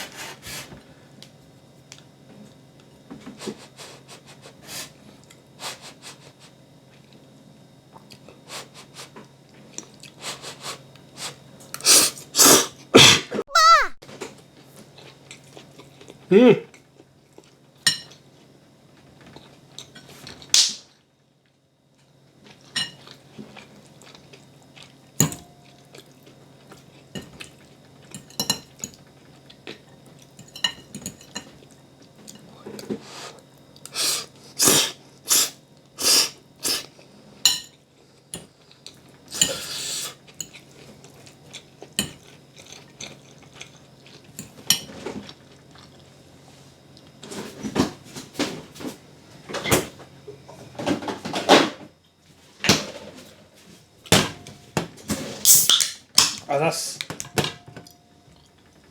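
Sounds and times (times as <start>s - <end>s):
utensils clinking against dishes: 30.4s - 31.6s.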